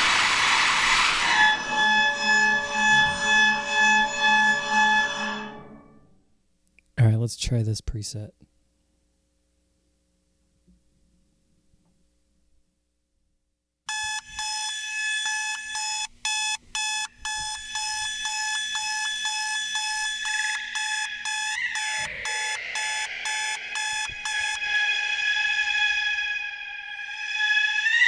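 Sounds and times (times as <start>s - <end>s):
swirling effect wash: 0.0s - 2.9s, 20.2s - 28.0s
alarm clock beeping with reverb: 13.9s - 25.9s.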